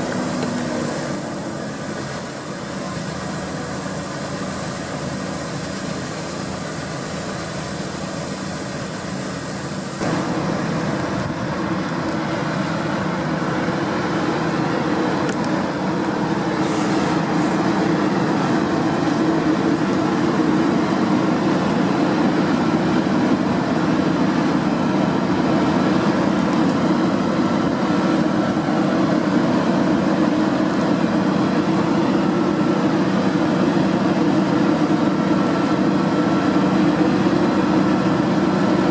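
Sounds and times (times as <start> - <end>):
combine harvester running: 0.0 - 38.9.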